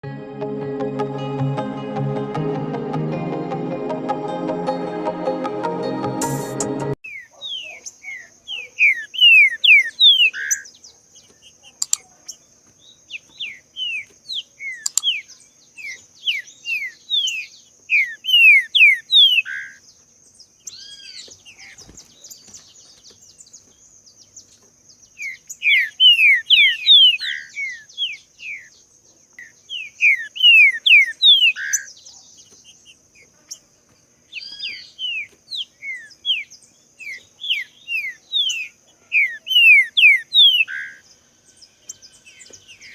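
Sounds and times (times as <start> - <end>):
bird singing whistled notes: 7.0 - 10.7, 13.0 - 19.8, 25.0 - 28.8, 29.4 - 32.5, 34.4 - 42.9.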